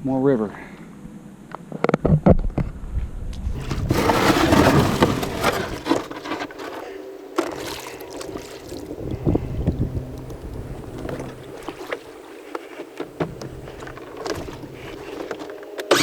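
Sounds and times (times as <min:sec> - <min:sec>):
boat engine humming: 0:03.6 - 0:16.0
water splashing and sloshing: 0:03.6 - 0:16.0.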